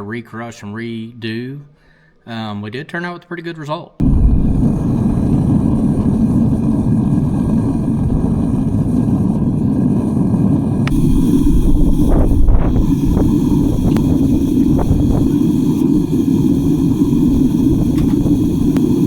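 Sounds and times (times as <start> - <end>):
wind buffeting microphone: 4.0 - 19.0.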